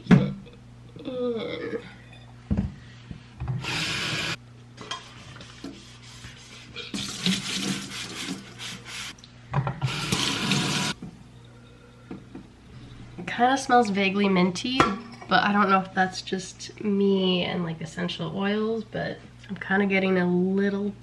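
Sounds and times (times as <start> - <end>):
sponge scrubbing: 5.0 - 9.2.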